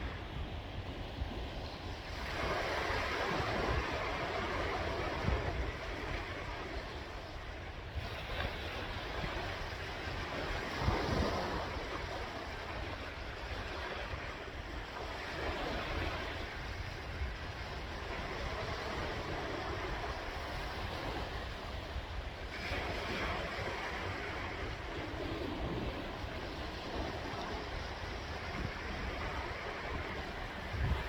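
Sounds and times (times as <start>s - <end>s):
sea waves washing in: 0.0s - 31.0s
wind buffeting microphone: 0.0s - 31.0s.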